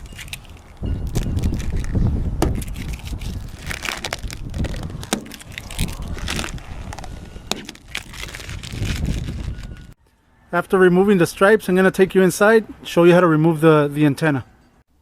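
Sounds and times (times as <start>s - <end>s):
wind rumble on microphone: 0.0s - 10.0s
vinyl stripes peeling off: 2.7s - 9.9s.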